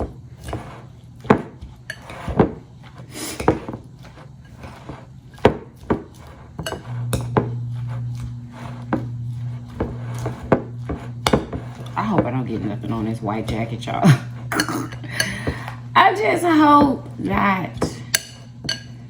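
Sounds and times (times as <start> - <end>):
steady low hum: 0.0 - 19.0
utensil knocking against a dish: 5.4 - 7.7, 8.7 - 15.9.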